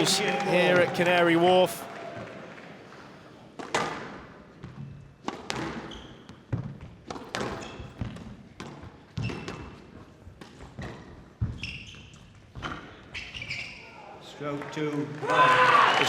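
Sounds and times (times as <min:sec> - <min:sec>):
shoes squeaking on court: 0:04.6 - 0:13.9.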